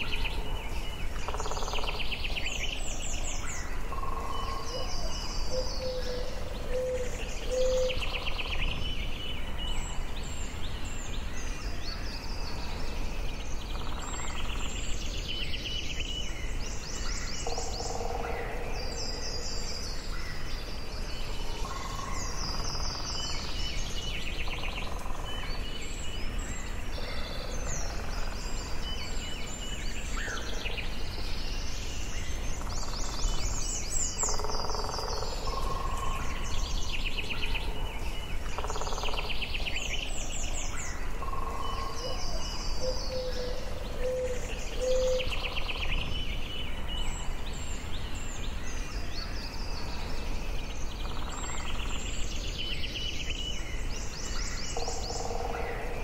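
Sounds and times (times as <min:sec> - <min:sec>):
birds singing and calling: 0:00.0 - 0:56.0
low woodland background hum: 0:00.0 - 0:56.0.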